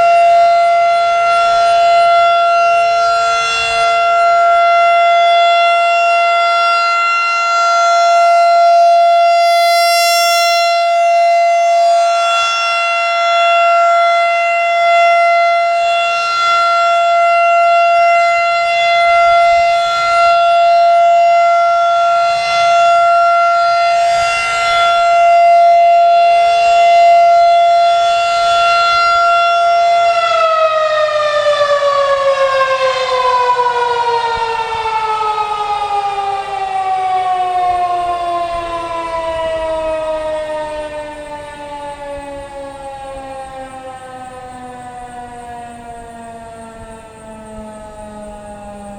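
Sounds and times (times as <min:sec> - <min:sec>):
warning siren steady tone: 0:00.0 - 0:48.9
siren winding down: 0:08.4 - 0:12.6.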